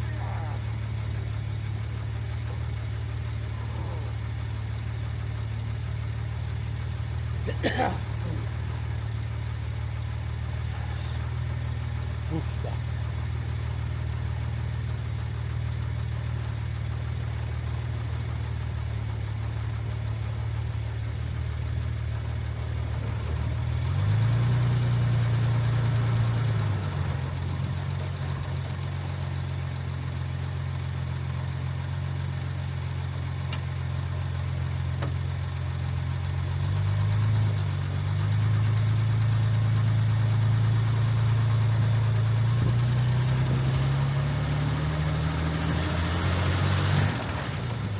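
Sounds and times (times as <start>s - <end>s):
car engine running: 0.0s - 47.9s.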